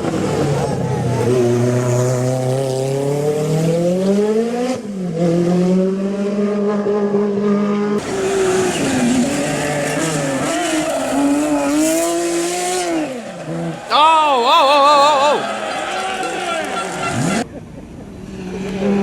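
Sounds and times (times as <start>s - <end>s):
rally car engine at full throttle: 0.0s - 13.8s.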